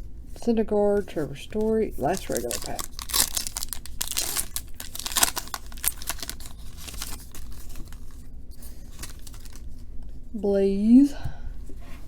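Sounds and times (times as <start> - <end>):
foil wrapper tearing and crinkling: 2.0 - 9.8.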